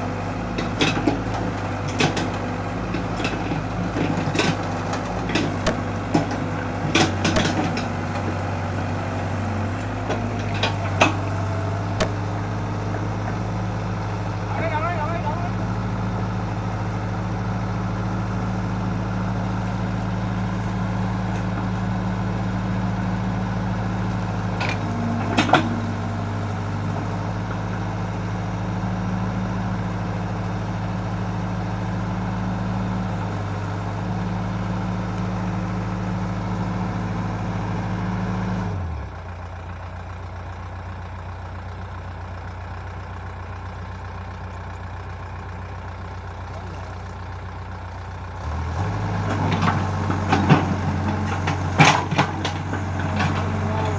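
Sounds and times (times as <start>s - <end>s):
heavy machine engine idling: 0.0s - 53.9s.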